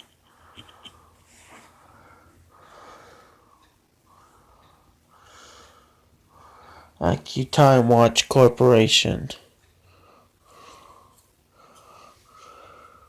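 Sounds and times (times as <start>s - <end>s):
faint breathing: 0.2s - 7.0s, 9.8s - 13.0s.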